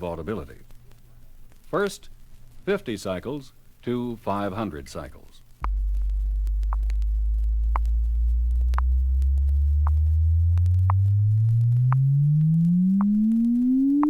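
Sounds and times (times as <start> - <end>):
rising sine tone sweep: 5.6 - 14.0.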